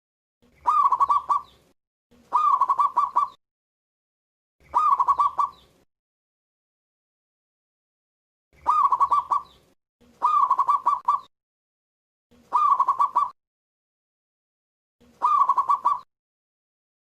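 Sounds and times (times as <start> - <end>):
dove cooing: 0.6 - 1.5, 2.2 - 3.4, 4.6 - 5.6, 8.6 - 11.3, 12.4 - 13.4, 15.1 - 16.1.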